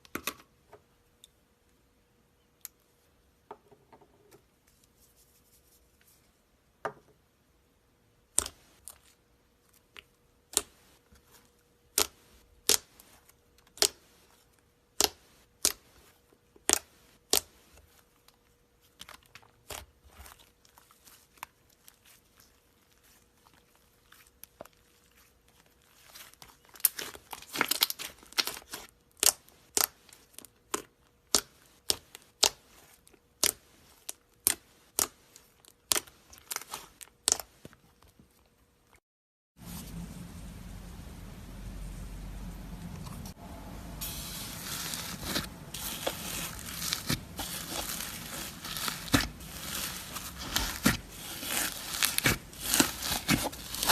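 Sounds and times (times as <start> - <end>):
slime crackling: 43.2 - 53.9.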